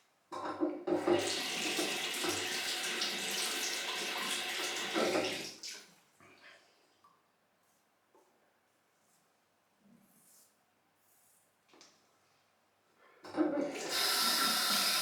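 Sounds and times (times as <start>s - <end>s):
water running from a tap: 1.1s - 5.9s, 13.7s - 15.0s.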